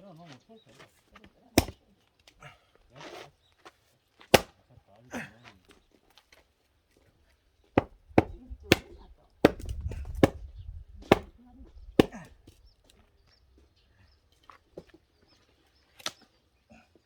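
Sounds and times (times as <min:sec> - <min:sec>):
axe chopping firewood: 0:01.6 - 0:01.8, 0:04.2 - 0:04.6, 0:07.8 - 0:11.4, 0:12.0 - 0:12.6.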